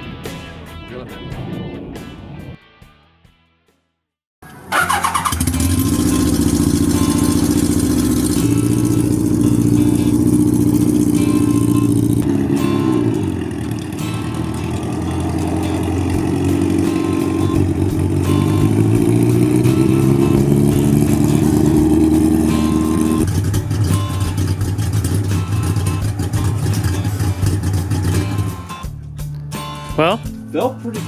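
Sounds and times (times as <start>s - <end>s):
motorcycle engine accelerating: 4.4s - 28.9s.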